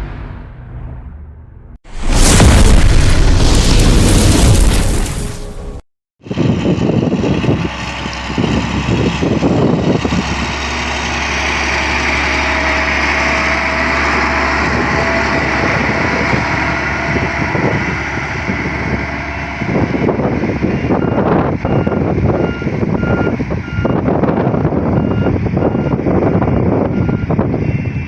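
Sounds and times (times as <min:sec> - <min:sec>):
diesel engine running: 0:06.4 - 0:22.3.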